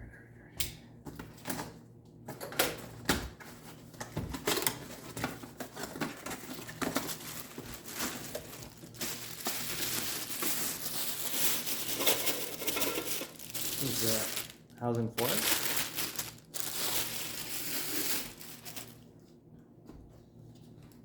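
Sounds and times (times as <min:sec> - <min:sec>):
packaging crinkling and rustling: 0:02.4 - 0:19.1.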